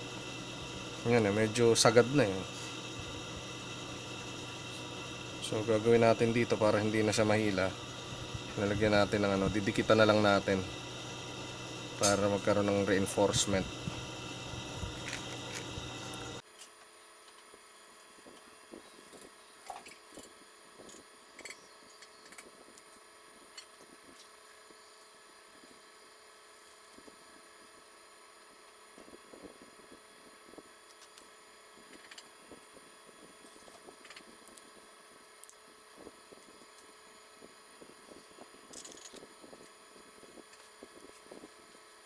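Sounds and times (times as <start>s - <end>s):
steady low hiss: 0.0s - 16.4s.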